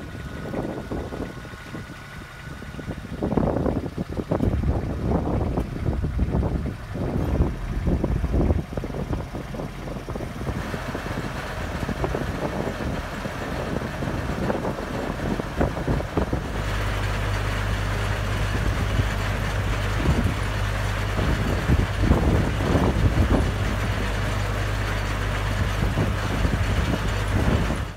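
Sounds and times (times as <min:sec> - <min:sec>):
diesel engine running: 0:00.0 - 0:27.9.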